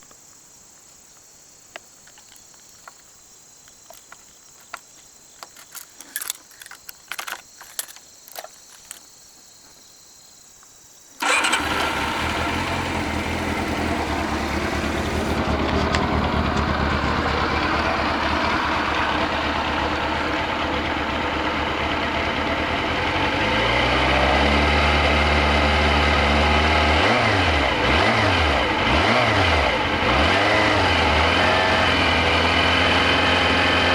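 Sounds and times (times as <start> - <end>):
clicks and knocks: 3.9 - 9.0
motorcycle engine running and revving: 11.2 - 33.9.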